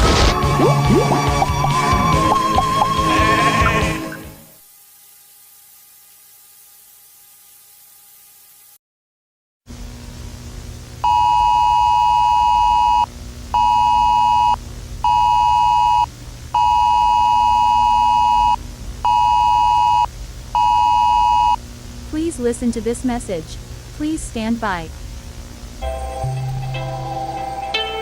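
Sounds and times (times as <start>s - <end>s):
low steady hum: 9.7s - 27.0s.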